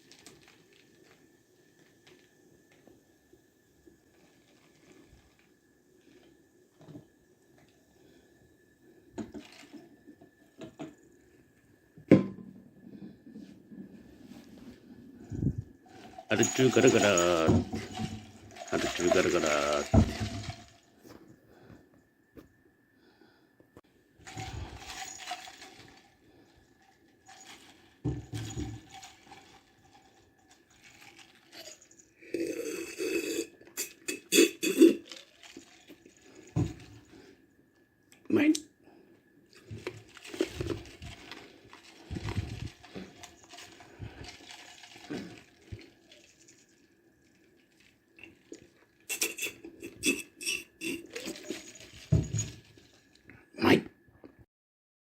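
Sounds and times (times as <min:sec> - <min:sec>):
liquid sloshing: 0:14.4 - 0:21.2, 0:24.2 - 0:32.5, 0:33.5 - 0:37.3, 0:39.5 - 0:53.2
objects knocking and clicking: 0:15.4 - 0:21.3, 0:27.2 - 0:32.0, 0:39.6 - 0:46.7, 0:48.2 - 0:53.0
ice clinking in a glass: 0:16.0 - 0:20.8, 0:24.3 - 0:26.1, 0:27.3 - 0:37.0, 0:48.2 - 0:52.7.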